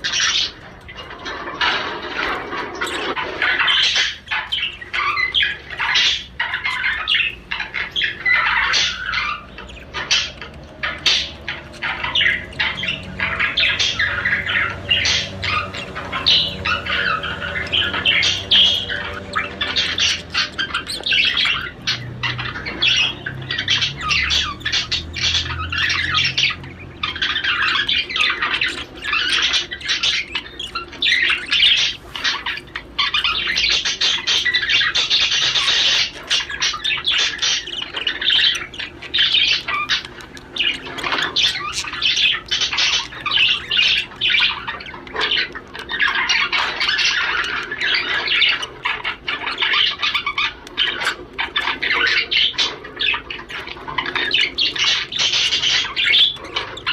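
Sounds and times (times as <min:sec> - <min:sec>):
budgerigar warbling: 0:00.0 - 0:56.9.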